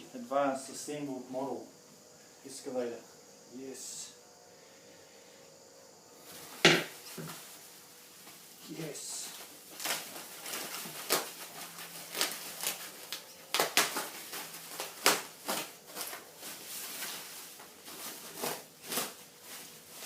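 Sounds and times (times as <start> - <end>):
packaging crinkling and tapping: 9.4 - 19.2.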